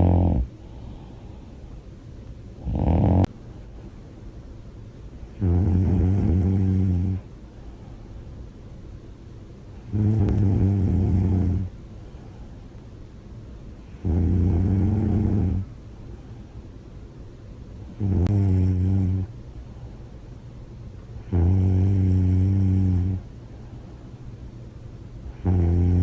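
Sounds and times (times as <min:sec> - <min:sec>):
woman snoring loudly: 0:00.0 - 0:00.5, 0:02.6 - 0:03.3, 0:05.4 - 0:07.2, 0:09.9 - 0:11.7, 0:14.0 - 0:15.6, 0:18.0 - 0:19.3, 0:21.3 - 0:23.2, 0:25.4 - 0:26.0.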